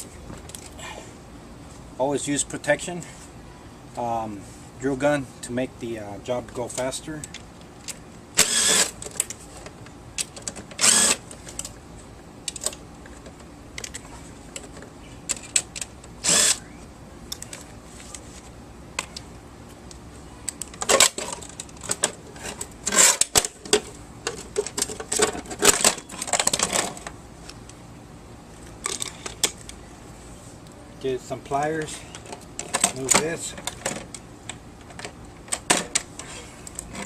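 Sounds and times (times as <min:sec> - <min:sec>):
cordless drill unscrewing: 0:10.8 - 0:11.2.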